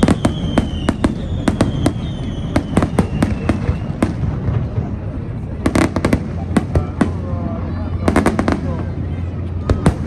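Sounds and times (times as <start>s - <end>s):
firework whistle falling in pitch: 0.0s - 4.0s
firework bangs: 0.0s - 10.0s.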